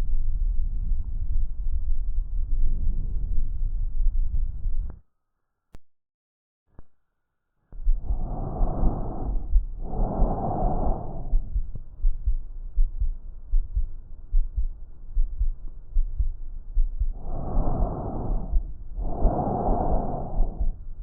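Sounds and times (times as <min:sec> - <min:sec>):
breath sounds through stethoscope: 0:07.8 - 0:12.9, 0:16.0 - 0:21.0
heartbeat thuds: 0:07.8 - 0:20.9.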